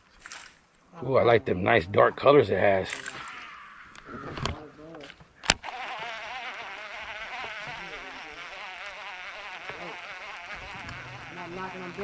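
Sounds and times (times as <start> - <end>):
insects buzzing: 2.7 - 12.0.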